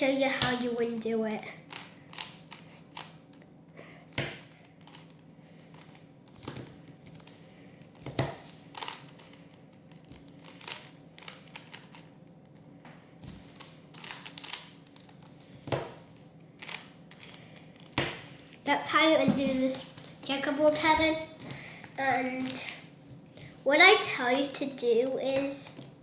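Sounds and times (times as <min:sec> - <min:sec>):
cube rustling in hands: 0:01.6 - 0:03.4, 0:04.4 - 0:25.9
plastic cube clicks and clacks: 0:08.0 - 0:12.1, 0:13.3 - 0:16.0.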